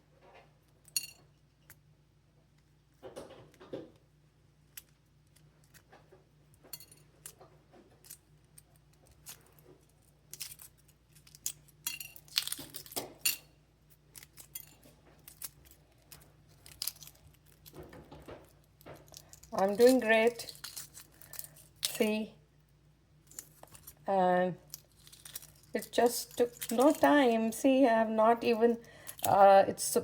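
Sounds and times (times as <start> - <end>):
egg shell cracking and clinking: 10.2 - 22.1, 24.6 - 27.3.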